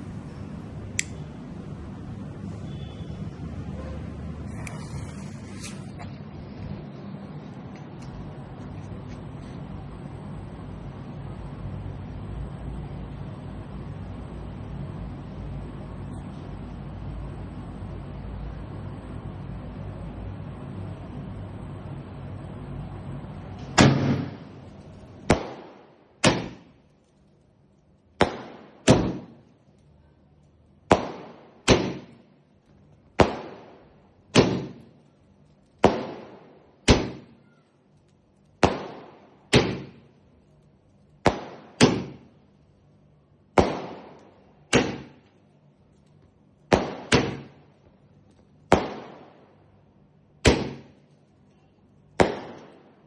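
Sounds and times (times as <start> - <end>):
firework bangs with echo: 23.6 - 26.8, 28.2 - 29.6, 30.9 - 32.3, 33.1 - 35.0, 35.8 - 37.6, 38.6 - 40.1, 41.2 - 42.4, 43.5 - 45.3, 46.7 - 47.7, 48.7 - 49.5, 50.4 - 51.0, 52.2 - 53.0.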